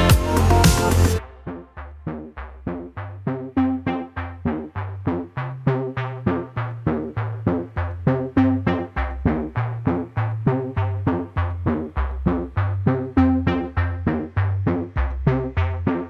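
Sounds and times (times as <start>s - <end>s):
bass line: 0.0s - 16.0s
plucked synthesizer notes: 0.0s - 16.0s.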